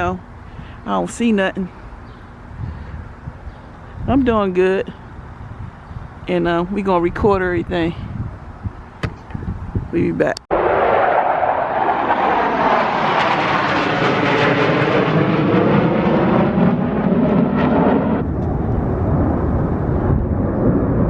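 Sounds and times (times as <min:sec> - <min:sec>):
jet aircraft roaring overhead: 0:10.5 - 0:21.0.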